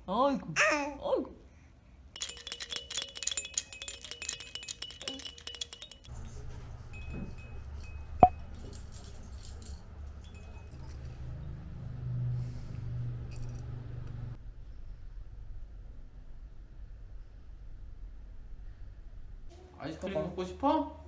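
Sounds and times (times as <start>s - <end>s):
small bells jingling: 2.2s - 11.0s.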